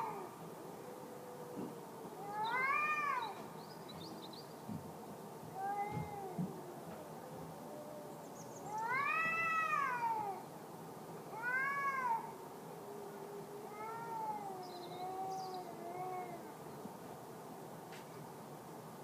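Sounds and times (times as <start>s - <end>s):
cats yowling: 1.3s - 3.4s, 5.5s - 10.4s, 11.3s - 12.4s, 13.0s - 16.5s.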